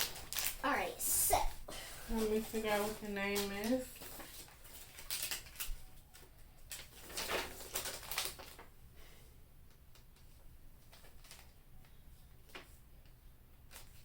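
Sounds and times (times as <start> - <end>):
plastic packaging crinkling: 0.0 - 1.3, 2.1 - 8.7, 10.9 - 11.6.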